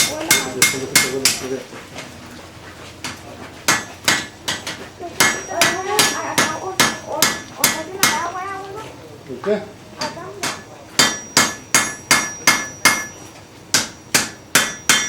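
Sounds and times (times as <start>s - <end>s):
hammer ringing on anvil: 0.0s - 1.4s, 5.2s - 8.2s, 10.0s - 15.0s.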